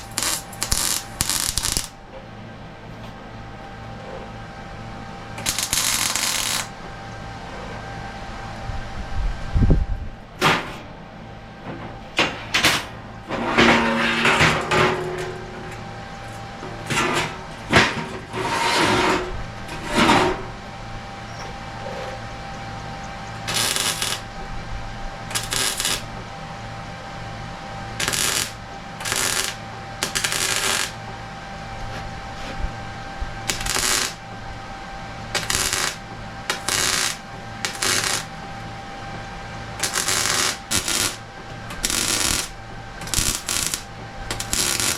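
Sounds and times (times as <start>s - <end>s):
crackling hissing bursts: 0.0s - 2.0s, 5.4s - 6.7s, 23.5s - 24.2s, 25.3s - 26.0s, 28.0s - 31.0s, 33.5s - 34.2s, 35.4s - 38.3s, 39.8s - 41.2s, 41.8s - 44.9s.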